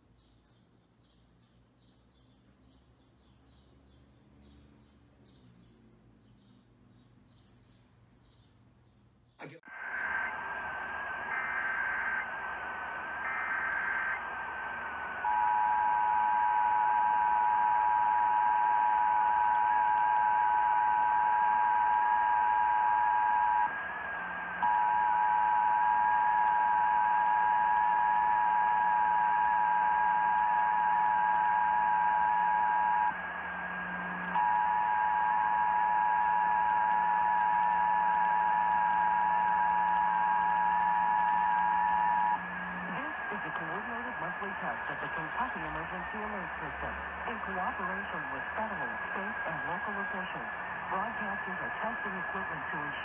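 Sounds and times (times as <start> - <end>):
radio static hiss: 9.4 - 53.0
screeching digital data bursts: 13.1 - 14.3.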